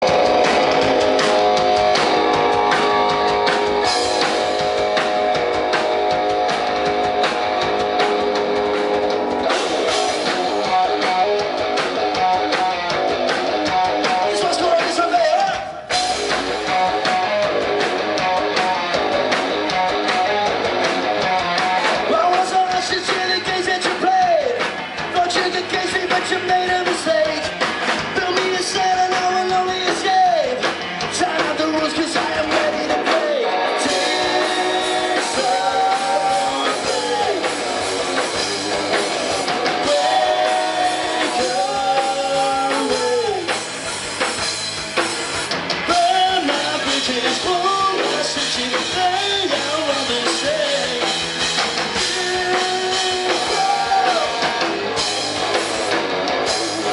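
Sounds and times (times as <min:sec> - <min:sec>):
sliding bent guitar notes: 0:00.0 - 0:14.5, 0:15.9 - 0:22.6, 0:33.4 - 0:56.9
rock band playing: 0:00.0 - 0:56.9.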